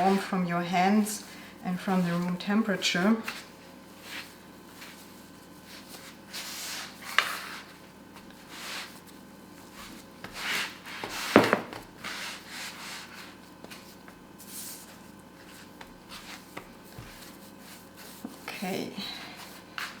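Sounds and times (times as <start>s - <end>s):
hands kneading dough: 0.0s - 20.0s
dough thump: 11.3s - 11.9s.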